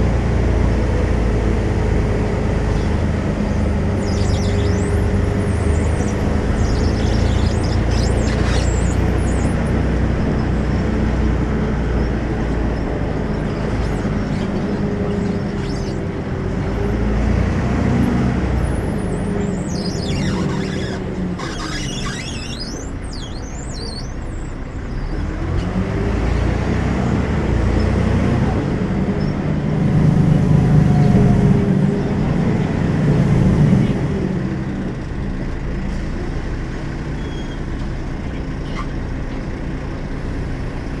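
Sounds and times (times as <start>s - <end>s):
bus diesel engine running: 0.0s - 41.0s
high squeals: 3.5s - 10.9s, 11.8s - 16.2s, 18.6s - 25.1s, 37.2s - 37.7s.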